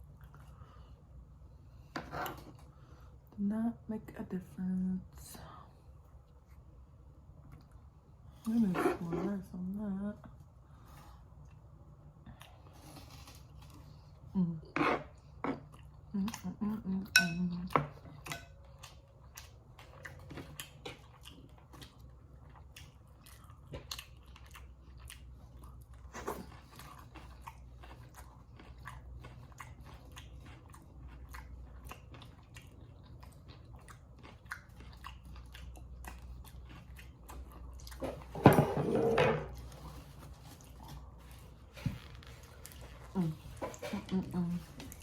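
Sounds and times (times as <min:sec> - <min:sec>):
chewing and biting: 0:17.6 - 0:38.4.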